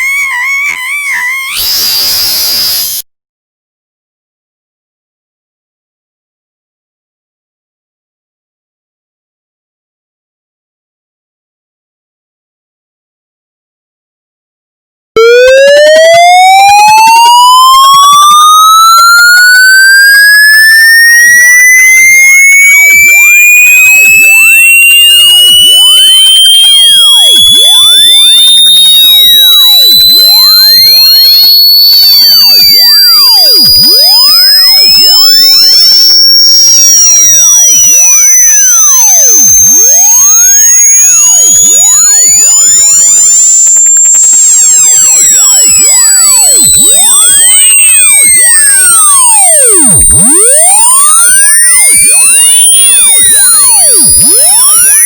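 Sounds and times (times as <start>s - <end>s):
electronic test tone sweeping upward: 0.0s - 3.0s, 15.2s - 55.0s.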